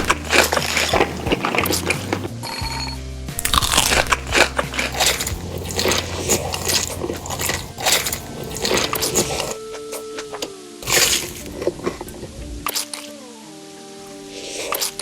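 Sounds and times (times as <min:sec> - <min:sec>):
chewing crispy food crunches: 0:00.0 - 0:02.4, 0:03.4 - 0:12.2.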